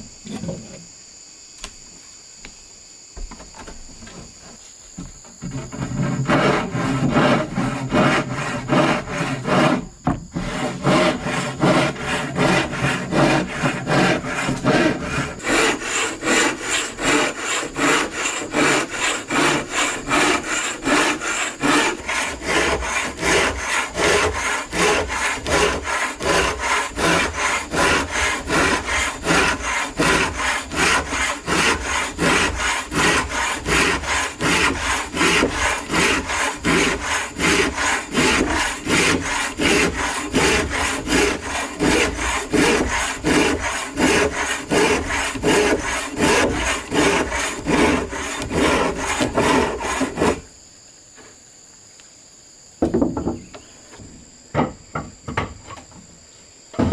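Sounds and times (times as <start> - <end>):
hand saw cutting bamboo: 5.4 - 50.5.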